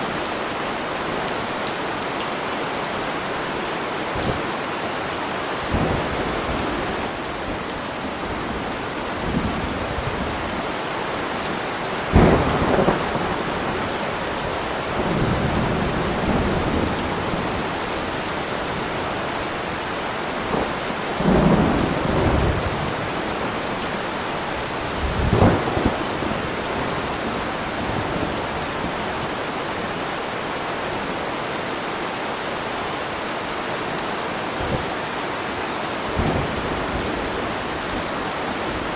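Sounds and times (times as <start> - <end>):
steady rain: 0.0 - 38.9
thunder rumbling: 12.1 - 17.9, 20.5 - 29.3.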